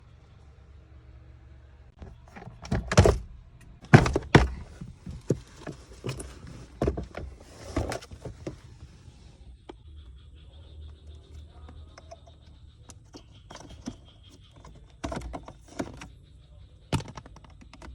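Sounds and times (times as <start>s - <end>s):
plastic knocks and clacks: 3.8s - 8.6s, 11.6s - 16.1s, 16.9s - 17.9s.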